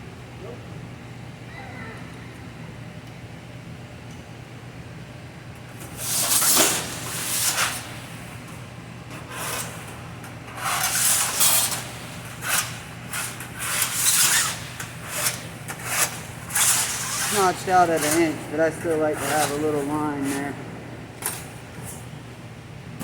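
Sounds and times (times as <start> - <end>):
steady low hum: 0.0 - 23.0
scraping and rubbing strokes: 10.6 - 20.6.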